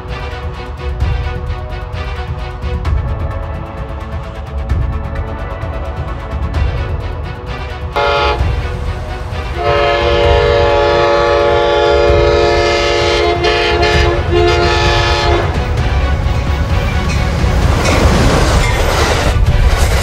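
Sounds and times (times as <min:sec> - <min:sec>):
low rumble of moving train: 0:00.0 - 0:20.0
train horn chord: 0:07.9 - 0:16.2.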